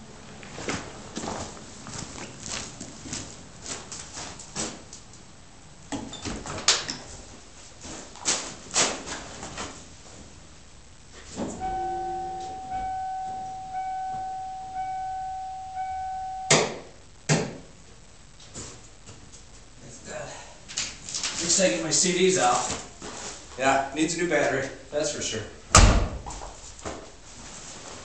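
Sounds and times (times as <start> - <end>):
truck warning chime dinging: 11.6 - 16.7.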